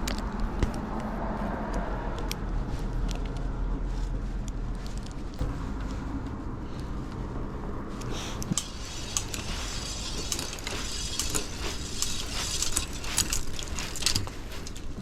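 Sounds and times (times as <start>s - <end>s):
sharp gear clicks: 8.0s - 15.0s
bicycle chain hissing over cogs: 8.1s - 15.0s.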